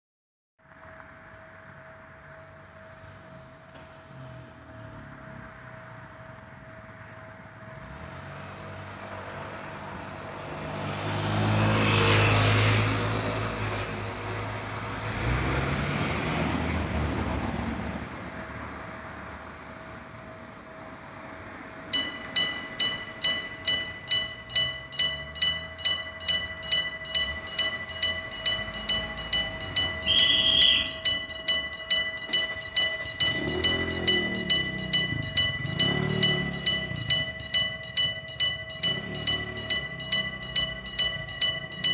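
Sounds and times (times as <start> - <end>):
vehicles passing: 0.6 - 41.9
electric warning bell ringing: 10.9 - 41.9
police whistle blast: 30.0 - 31.0.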